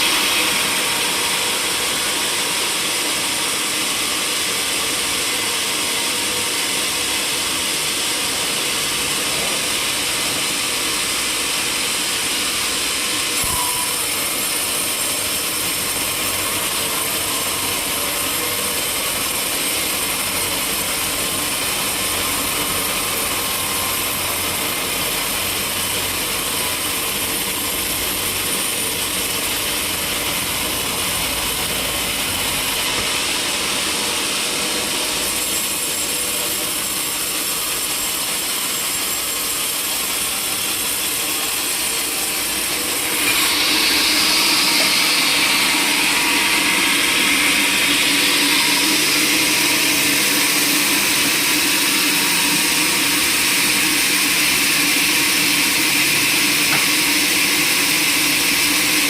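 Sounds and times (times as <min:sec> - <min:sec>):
sawmill saw and machinery hissing: 0:00.0 - 0:59.0.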